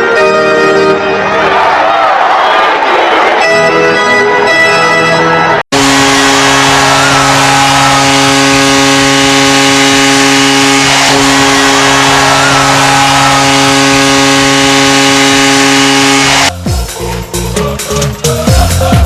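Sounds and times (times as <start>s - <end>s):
loud deep goal horn blast: 5.7s - 16.5s.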